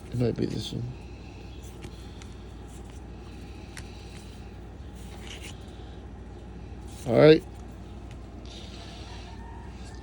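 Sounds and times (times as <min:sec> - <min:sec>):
low room hum: 0:00.0 - 0:10.0
cards clicking and scraping: 0:01.3 - 0:05.9.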